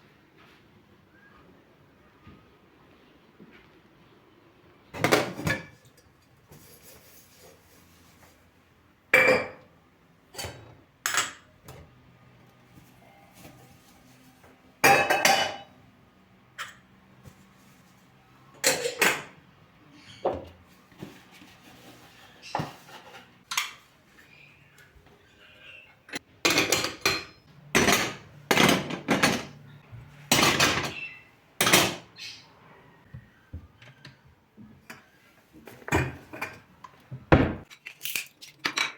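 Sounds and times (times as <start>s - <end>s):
dishes and utensils clinking: 14.8s - 15.8s, 18.6s - 19.4s, 26.1s - 29.7s, 30.3s - 32.1s.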